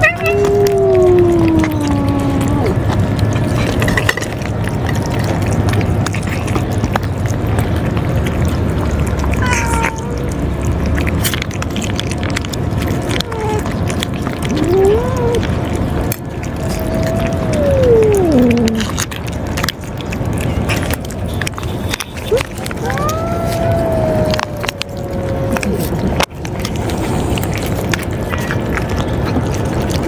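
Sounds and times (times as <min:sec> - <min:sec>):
cats meowing: 0:00.0 - 0:03.0, 0:09.3 - 0:10.8, 0:13.0 - 0:19.0, 0:22.3 - 0:26.1.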